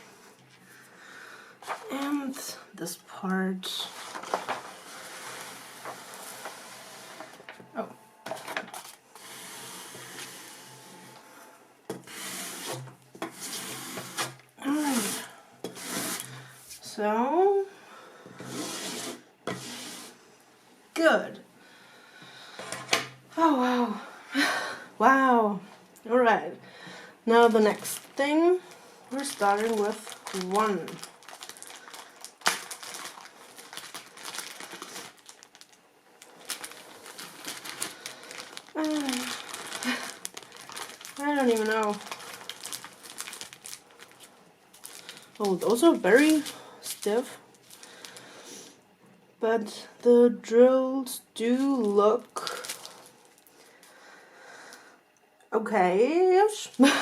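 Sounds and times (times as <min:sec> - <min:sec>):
plastic bags crinkling: 0:01.6 - 0:02.4, 0:03.8 - 0:10.8, 0:27.3 - 0:48.4, 0:51.6 - 0:53.9
ruler scraping across canvas: 0:12.0 - 0:16.3, 0:18.4 - 0:20.2.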